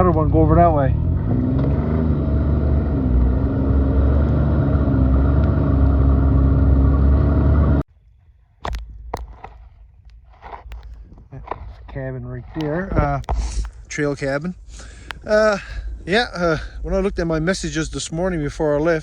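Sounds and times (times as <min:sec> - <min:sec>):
snowmobile engine running: 0:00.0 - 0:07.8.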